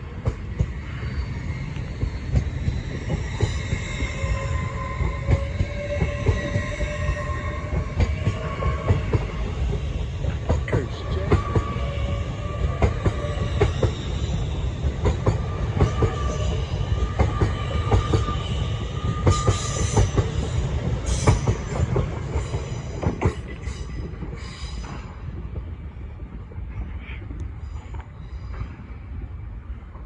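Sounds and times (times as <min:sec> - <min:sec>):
train rumble: 0:00.0 - 0:30.0
train wheels clicking over rail joints: 0:12.6 - 0:25.8.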